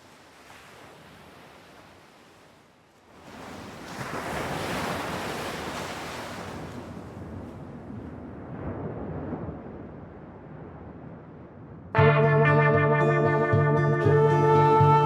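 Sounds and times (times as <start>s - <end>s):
ocean waves surging: 3.2s - 7.0s.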